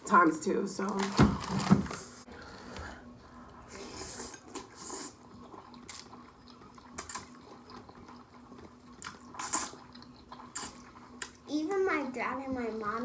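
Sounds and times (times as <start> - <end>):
chewing and slurping noodles: 3.7 - 11.5.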